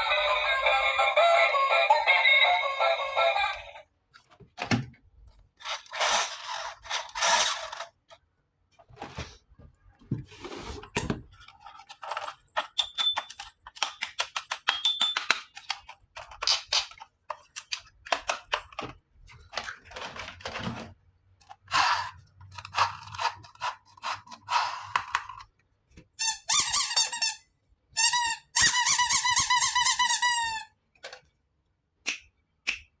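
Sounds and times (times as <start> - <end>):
plastic toy parts clicking: 11.3 - 20.2.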